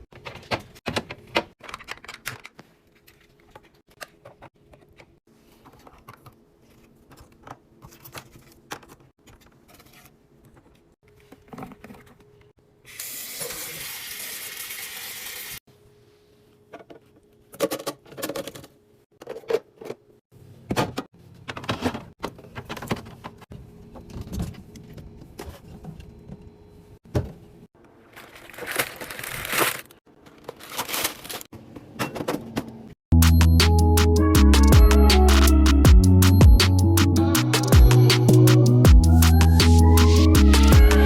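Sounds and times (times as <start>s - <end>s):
clicks and knocks of items: 0.1s - 12.5s, 16.7s - 20.1s
packaging rustling: 28.1s - 31.5s.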